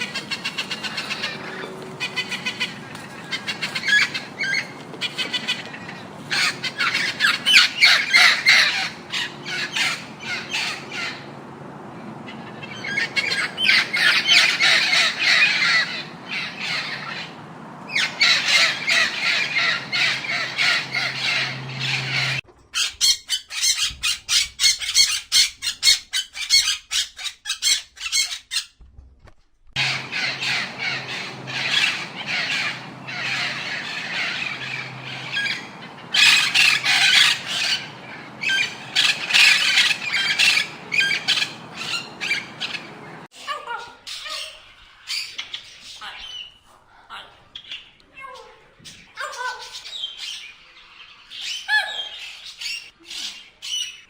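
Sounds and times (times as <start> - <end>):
parakeet squawking: 0.0 - 28.7, 29.8 - 54.0.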